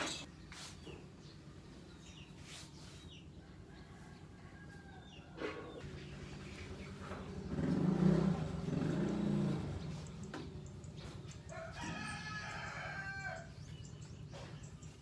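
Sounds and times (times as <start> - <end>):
rooster crowing: 11.5 - 13.6.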